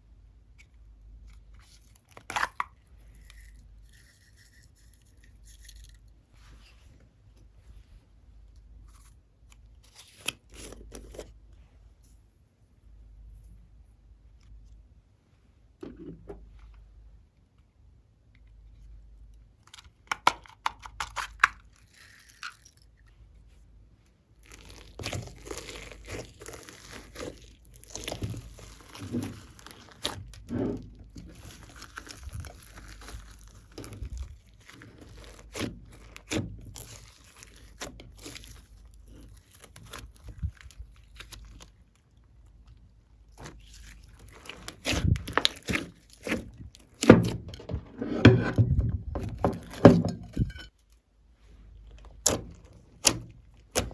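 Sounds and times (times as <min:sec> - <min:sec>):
slime crunching and squishing: 0:01.2 - 0:06.7, 0:08.9 - 0:11.4, 0:19.6 - 0:23.1, 0:24.3 - 0:50.7, 0:51.5 - 0:53.9.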